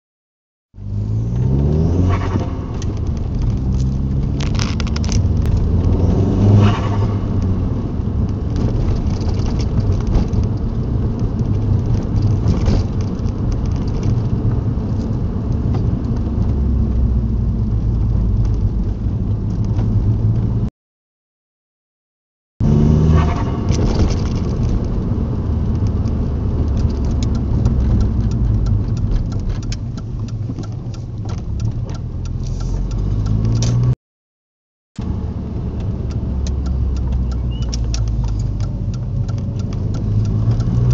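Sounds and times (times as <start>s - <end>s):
car engine revving: 0.8s - 13.6s, 22.6s - 34.0s, 35.0s - 40.9s.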